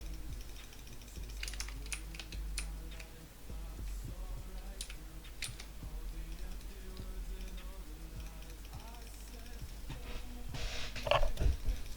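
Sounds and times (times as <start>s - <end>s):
chair creaking: 9.9s - 11.9s.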